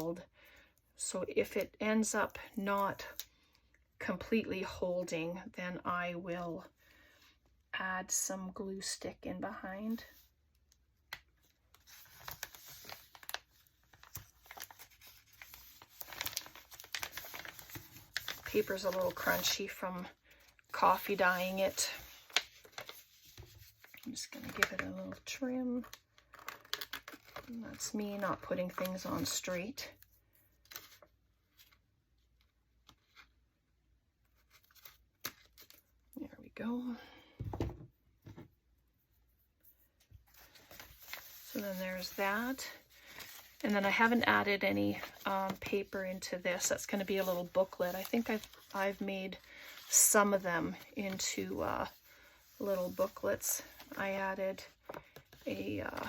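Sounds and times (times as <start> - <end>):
stiff paper crinkling and crackling: 10.1 - 33.4, 40.1 - 56.0.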